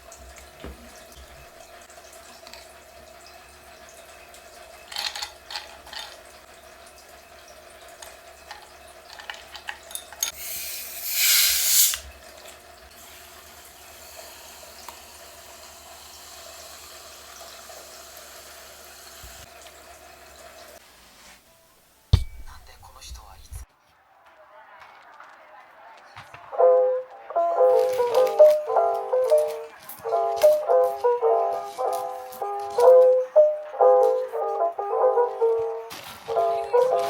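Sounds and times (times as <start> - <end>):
tap running water: 0.0 - 4.5, 7.0 - 20.8
clinks and knocks: 8.5 - 10.4, 22.2 - 23.6
sharp thump: 22.2 - 23.6.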